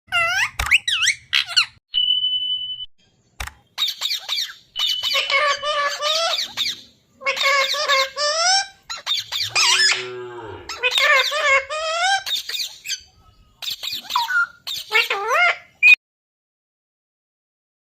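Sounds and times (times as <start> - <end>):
parrot calling: 3.8 - 16.0.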